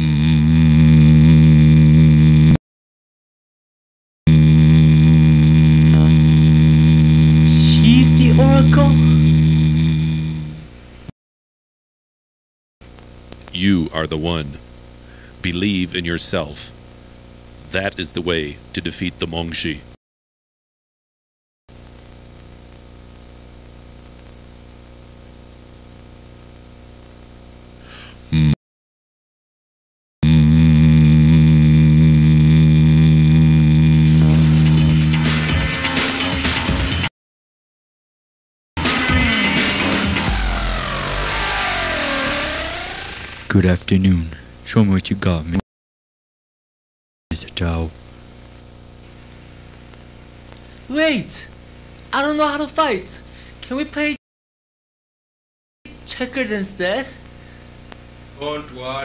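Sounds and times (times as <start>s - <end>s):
loud electrical hum: 4.3s - 11.1s, 12.8s - 20.0s, 21.7s - 28.6s, 30.2s - 35.5s, 38.8s - 45.6s, 47.3s - 54.2s, 55.9s - 59.0s.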